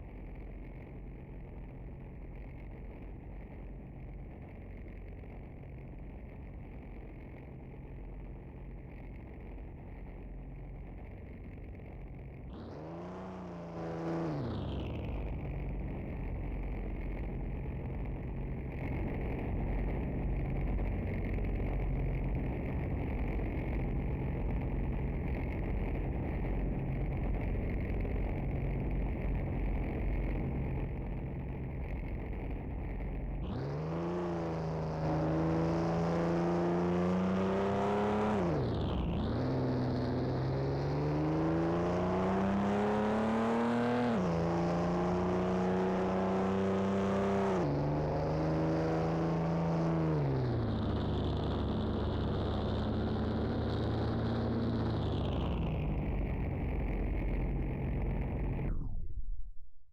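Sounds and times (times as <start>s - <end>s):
car accelerating through gears: 33.5s - 55.5s.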